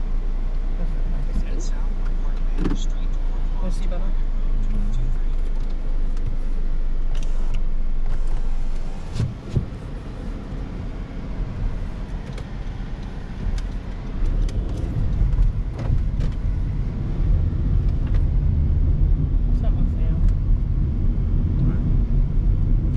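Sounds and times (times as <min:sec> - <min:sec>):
car engine and tyre rumble: 0:00.0 - 0:22.9
sharp clicks: 0:12.1 - 0:16.5.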